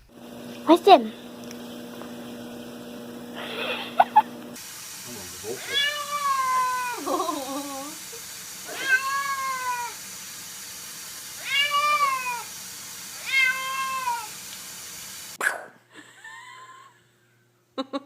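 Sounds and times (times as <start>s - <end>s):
cat meowing: 5.6s - 7.1s, 8.7s - 10.0s, 11.4s - 12.5s, 13.2s - 14.3s.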